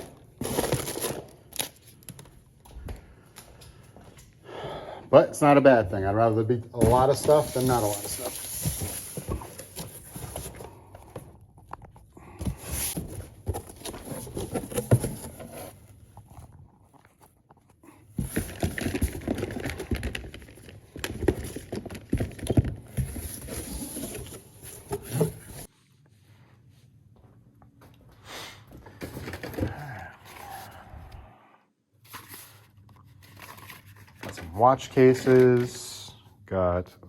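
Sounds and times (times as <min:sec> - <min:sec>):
plastic items clattering and rustling: 0:00.0 - 0:02.3, 0:06.8 - 0:17.3, 0:18.0 - 0:25.7, 0:28.7 - 0:30.6, 0:32.1 - 0:36.1.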